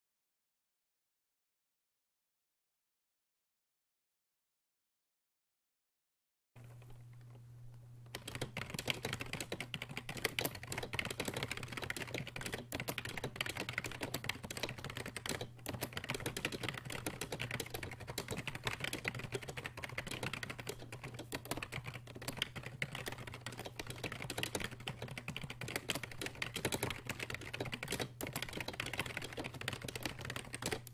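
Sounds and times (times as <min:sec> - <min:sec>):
steady low hum: 0:06.6 - 0:30.9
typing on rubber dome keyboard: 0:08.1 - 0:30.9.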